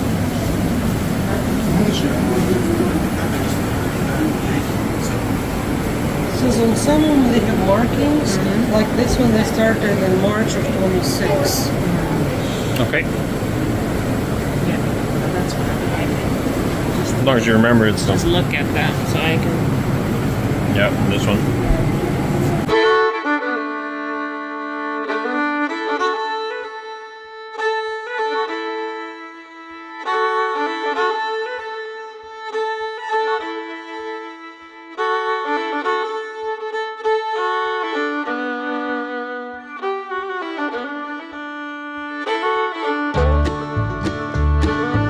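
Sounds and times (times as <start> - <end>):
fiddle playing melody: 0.0 - 45.0.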